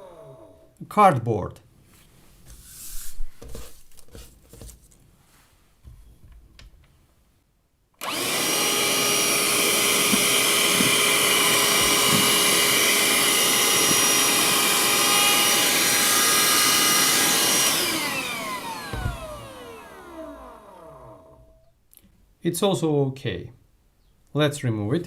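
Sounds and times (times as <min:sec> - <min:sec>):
handheld vacuum cleaner whining: 0:00.0 - 0:00.6, 0:08.0 - 0:21.5.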